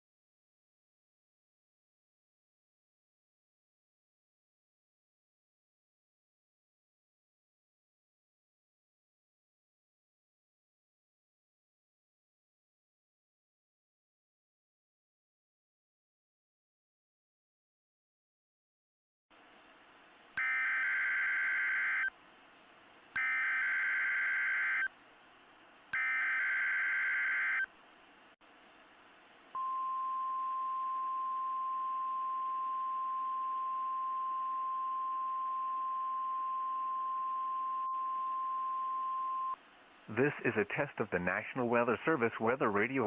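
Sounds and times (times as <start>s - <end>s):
steady alarm tone: 20.4s - 22.1s, 23.2s - 24.9s, 26.0s - 27.7s.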